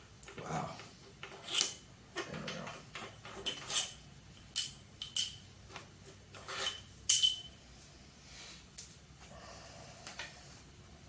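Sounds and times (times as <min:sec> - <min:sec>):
metal tools clinking: 0:01.2 - 0:05.5, 0:06.4 - 0:07.6.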